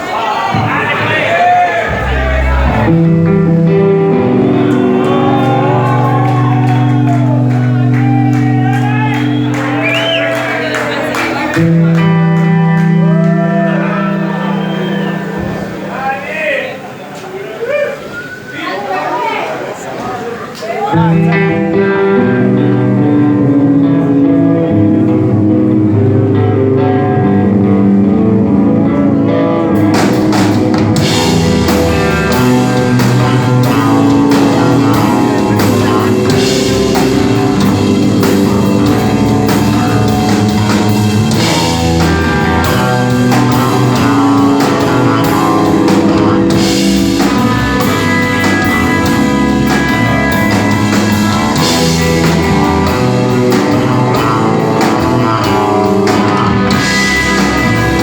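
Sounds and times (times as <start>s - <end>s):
rock band playing: 0.0s - 16.2s, 20.9s - 58.0s
drum kit and cymbals: 29.8s - 58.0s.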